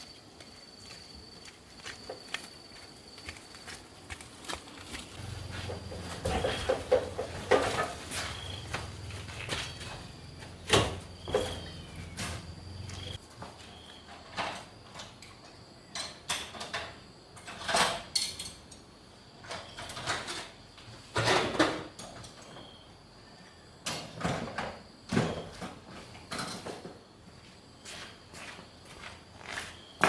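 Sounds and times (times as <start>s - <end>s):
metal tools knocking and scraping: 5.2s - 13.2s, 14.0s - 18.8s.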